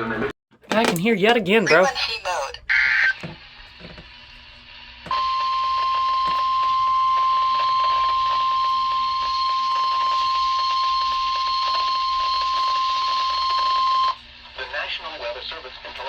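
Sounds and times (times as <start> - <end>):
radio hiss: 7.4 - 16.0.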